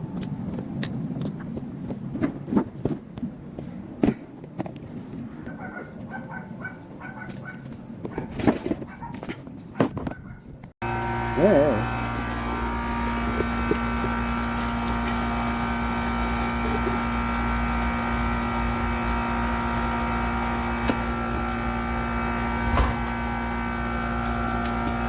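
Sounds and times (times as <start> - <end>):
fridge compressor humming: 10.8 - 25.0.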